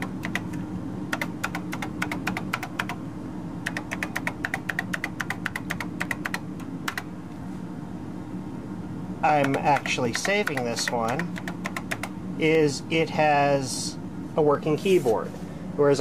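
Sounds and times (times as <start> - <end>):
keyboard typing: 0.0 - 3.0, 3.6 - 7.1, 9.4 - 12.1
steady low hum: 0.0 - 16.0.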